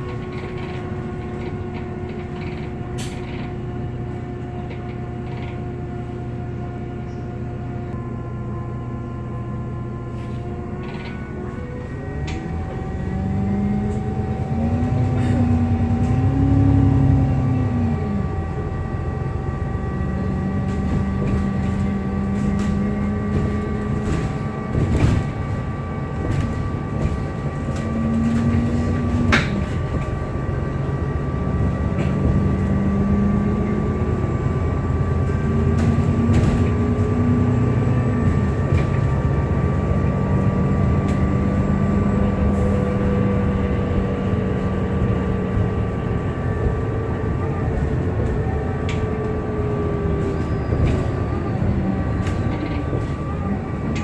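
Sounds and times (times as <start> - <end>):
bus engine revving: 0.0 - 54.0
body rattles and clicks: 20.7 - 30.4.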